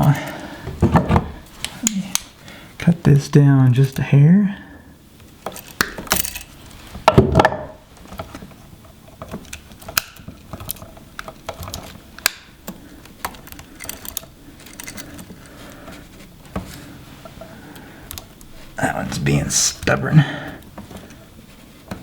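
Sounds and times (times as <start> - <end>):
wire cutters clicking and snapping: 1.6 - 2.4, 9.1 - 15.5.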